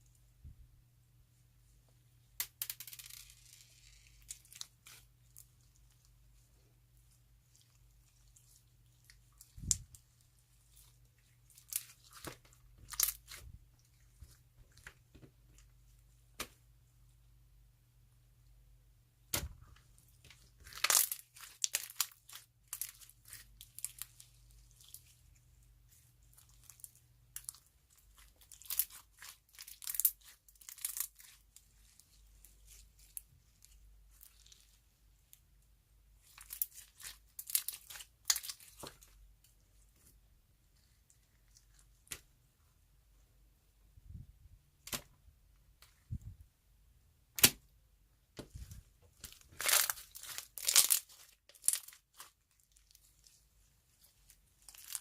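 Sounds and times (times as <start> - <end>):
slime squeezed with sticky crackles: 20.4 - 25.3, 25.9 - 34.8, 36.2 - 39.2, 49.2 - 53.4, 54.1 - 55.0.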